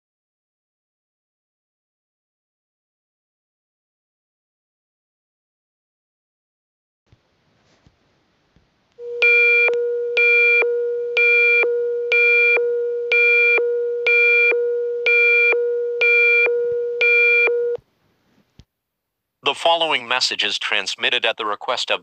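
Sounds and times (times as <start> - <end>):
steady low alert tone: 9.0 - 17.8.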